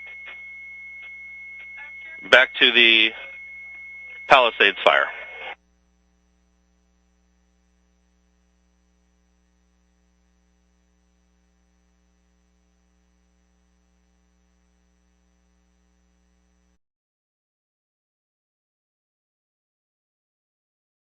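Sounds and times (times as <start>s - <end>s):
faint electrical hum: 0.0s - 16.8s
radio voice transmission: 1.8s - 3.4s, 4.1s - 5.6s.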